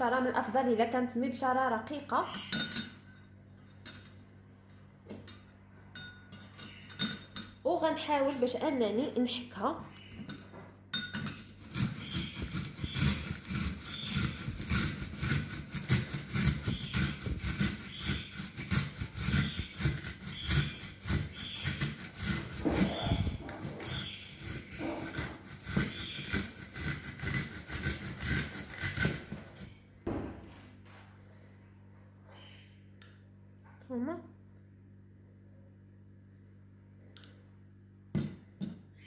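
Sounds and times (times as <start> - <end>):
onion grating on grater: 11.4 - 29.7.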